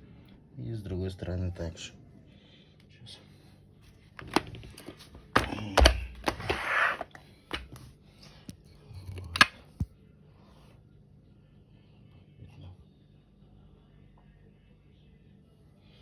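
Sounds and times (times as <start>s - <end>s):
handling clicks and knocks: 4.2s - 7.9s, 9.1s - 9.6s.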